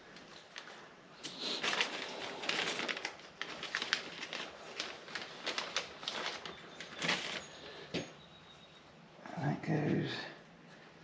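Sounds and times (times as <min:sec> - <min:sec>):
hands rustling and crinkling parts: 0:00.0 - 0:08.2.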